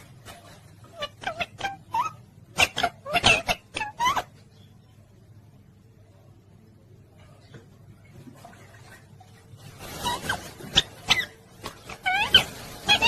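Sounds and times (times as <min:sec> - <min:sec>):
parrot chirping: 0:00.8 - 0:04.7, 0:09.8 - 0:13.0.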